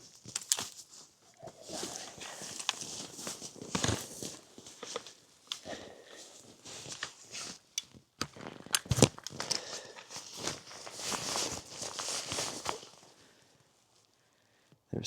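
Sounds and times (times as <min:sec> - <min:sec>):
footsteps crunching on rough ground: 0:00.0 - 0:07.4.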